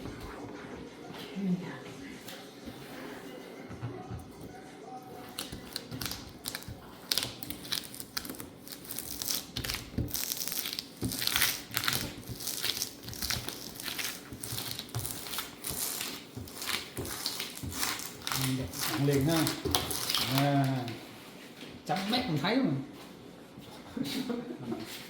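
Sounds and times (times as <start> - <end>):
vinyl sheet crinkling: 5.2 - 21.0.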